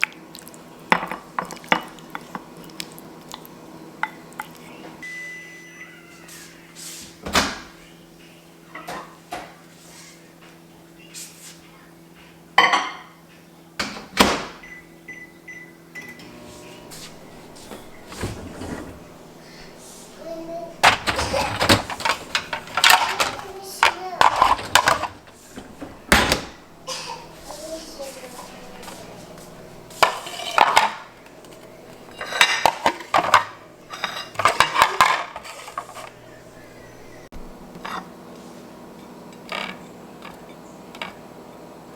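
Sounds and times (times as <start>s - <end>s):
microwave humming: 0.1s - 9.6s, 12.6s - 41.9s
microwave keypad beeps: 5.0s - 6.3s, 14.6s - 16.3s
dishes and cutlery clattering: 12.6s - 13.2s, 16.7s - 36.3s
kitchen knocks: 16.8s - 31.2s
door banging shut: 20.8s - 23.4s, 25.6s - 26.9s.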